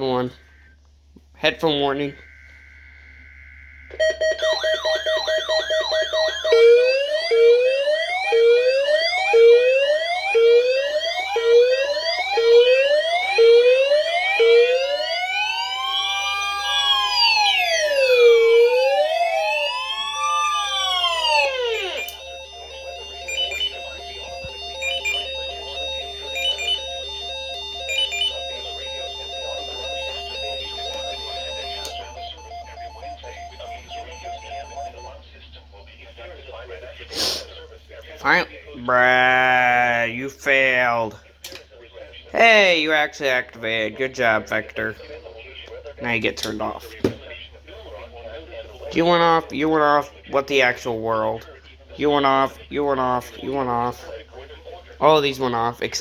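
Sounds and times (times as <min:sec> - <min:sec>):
beeping alarm tones: 0:01.6 - 0:35.2
electronic siren tones: 0:01.6 - 0:35.2.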